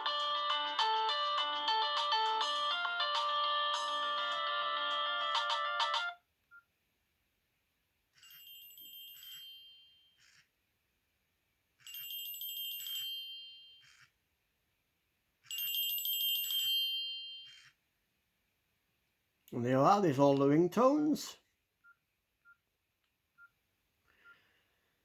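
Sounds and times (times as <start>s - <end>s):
high phone ringing tone: 0.0s - 6.2s
polyphonic ringtone tune: 0.0s - 6.2s.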